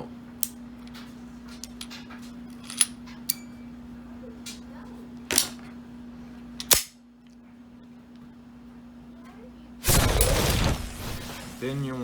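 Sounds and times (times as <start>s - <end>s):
steady low hum: 9.8s - 12.0s.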